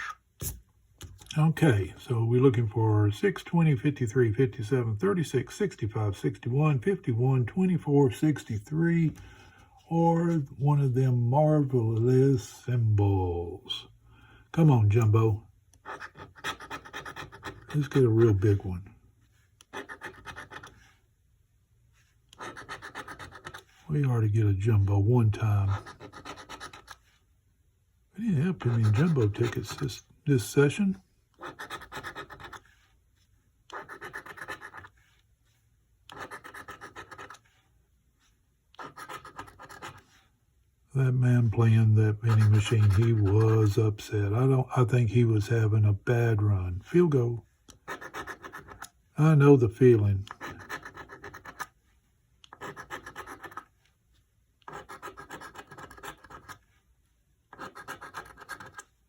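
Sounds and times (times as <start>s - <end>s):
scratch-off ticket being scratched: 0.0s - 0.6s, 2.3s - 9.2s, 14.6s - 21.0s, 22.0s - 27.2s, 28.2s - 32.9s, 33.7s - 35.2s, 36.0s - 37.6s, 38.7s - 40.3s, 41.1s - 51.8s, 52.4s - 53.8s, 54.6s - 56.8s, 57.5s - 59.0s.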